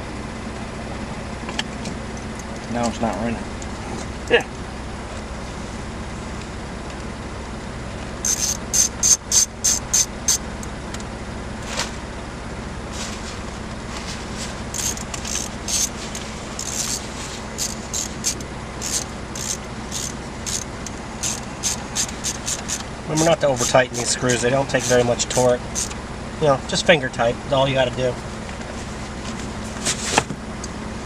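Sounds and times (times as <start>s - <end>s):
steady low hum: 0.0s - 31.0s
hand ratchet clicking: 8.2s - 10.4s, 14.7s - 26.0s.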